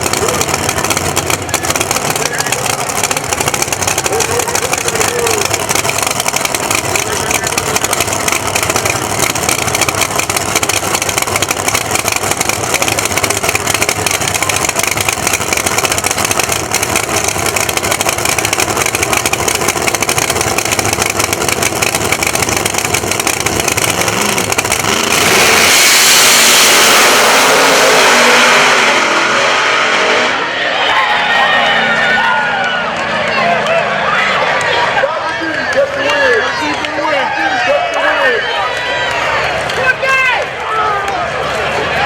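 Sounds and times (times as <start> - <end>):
race car engines revving: 0.0 - 42.0
loud rushing noise: 24.1 - 35.9.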